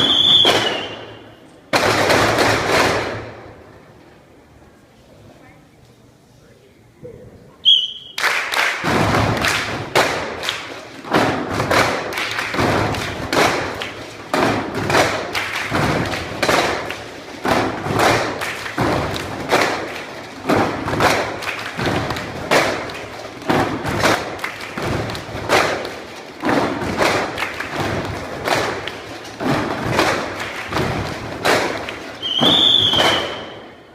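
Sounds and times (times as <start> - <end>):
drumming on tin cans: 8.8 - 33.3.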